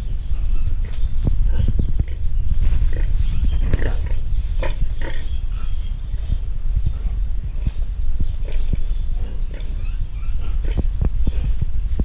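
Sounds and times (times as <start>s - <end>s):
low rumble: 0.0s - 12.0s
pig grunting: 2.9s - 5.4s, 8.4s - 11.6s.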